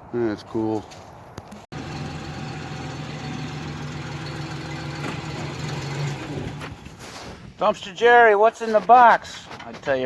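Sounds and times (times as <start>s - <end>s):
vehicle engine humming: 1.7s - 7.0s.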